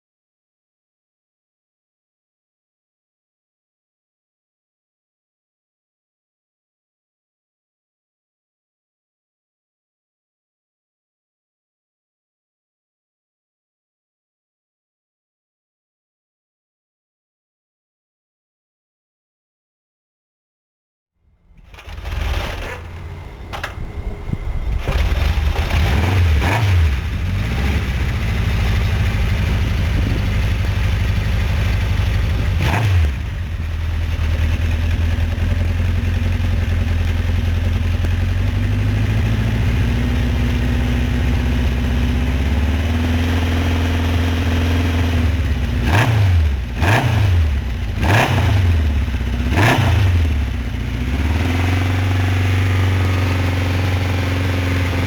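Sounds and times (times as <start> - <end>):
motorcycle engine revving: 21.4 - 55.0.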